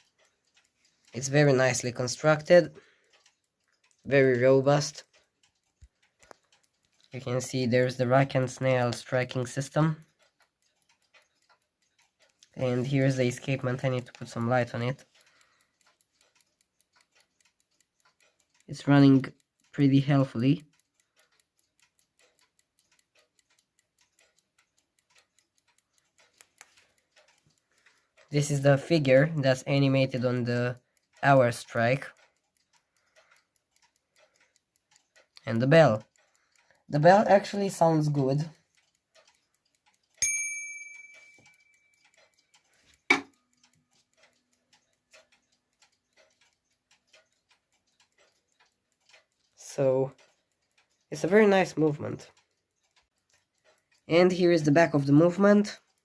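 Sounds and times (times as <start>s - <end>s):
wall clock ticking fast: 0.0s - 56.0s
small clock bell striking: 40.2s - 42.2s.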